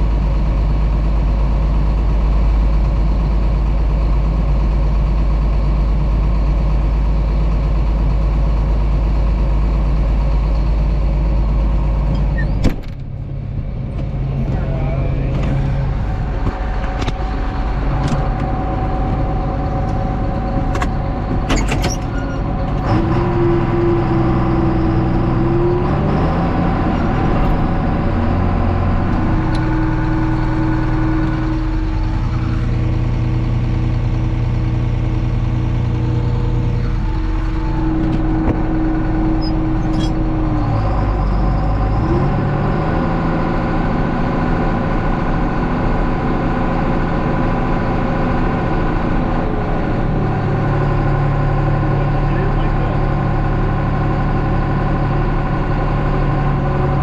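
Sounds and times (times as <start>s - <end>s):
combine harvester engine: 0.0s - 57.0s.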